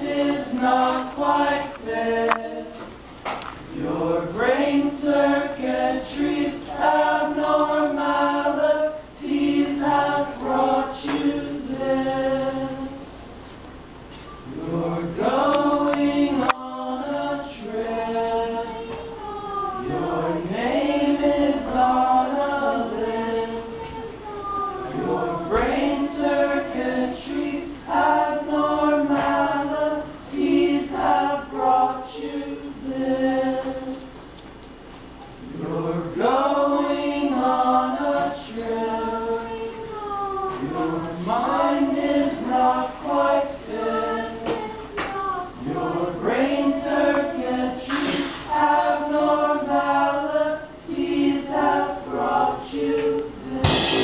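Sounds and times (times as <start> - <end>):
voices singing in harmony: 0.0 - 54.0
sudden loud burst: 53.6 - 54.0.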